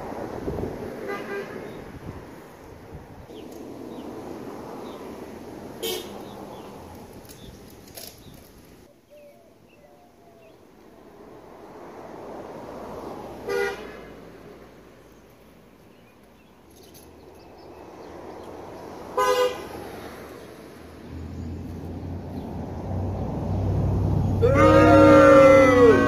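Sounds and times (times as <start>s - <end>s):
cars passing on road: 0.0s - 26.0s
car horn honks: 1.1s - 1.8s, 5.8s - 6.2s, 13.5s - 14.1s, 19.2s - 19.7s, 24.4s - 26.0s.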